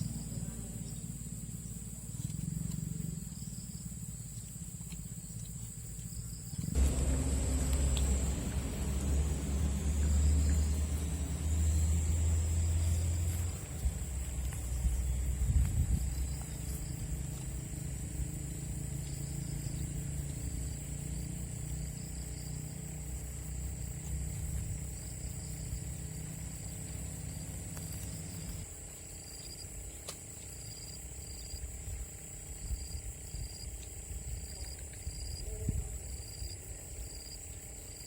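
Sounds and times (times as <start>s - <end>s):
insect chirps: 0.0s - 38.0s
insects droning: 0.0s - 38.0s
vehicle engine passing by: 6.6s - 28.7s.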